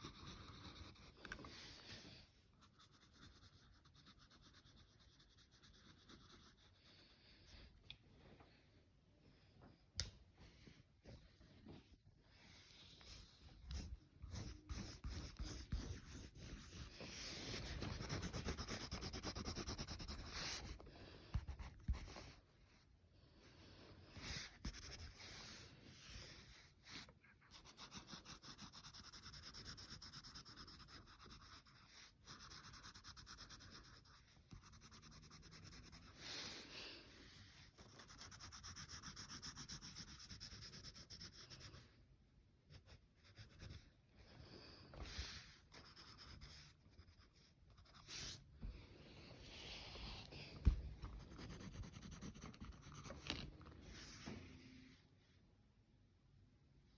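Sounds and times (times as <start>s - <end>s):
coloring strokes scratching paper: 0.0s - 7.1s, 13.0s - 20.8s, 24.2s - 42.0s, 42.7s - 43.9s, 45.1s - 48.4s, 51.1s - 54.3s.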